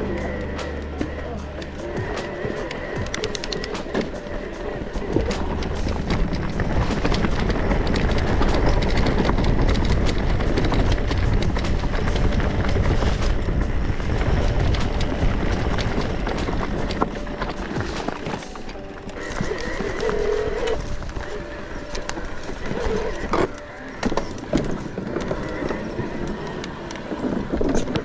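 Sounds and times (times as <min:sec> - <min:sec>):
bike rattling and clattering: 0:00.0 - 0:28.0
tyres rumbling on trail: 0:00.0 - 0:28.0.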